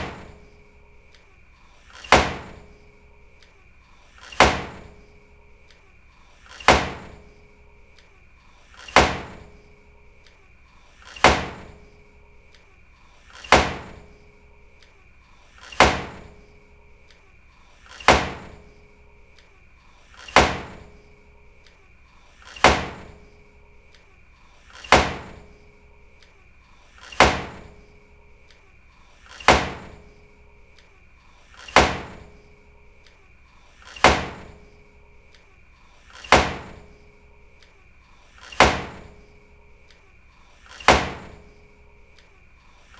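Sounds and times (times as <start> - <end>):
door slamming: 0.0 - 1.2, 1.9 - 3.5, 4.2 - 5.8, 6.5 - 7.4, 8.7 - 9.7, 11.0 - 12.6, 13.3 - 14.3, 15.6 - 16.6, 17.9 - 18.8, 20.1 - 21.1, 22.5 - 23.4, 24.8 - 25.7, 27.0 - 28.0, 29.3 - 30.2, 31.6 - 32.5, 33.8 - 34.8, 36.1 - 37.0, 38.4 - 39.3, 40.6 - 41.6.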